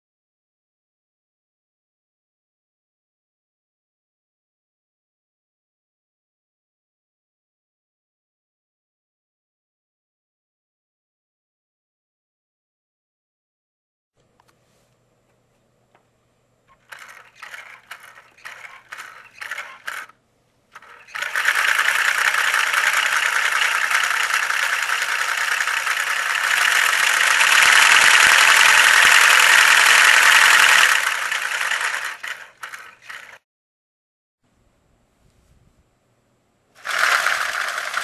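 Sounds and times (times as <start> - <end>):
plastic model engine clattering: 16.7 - 33.4, 36.8 - 38.0.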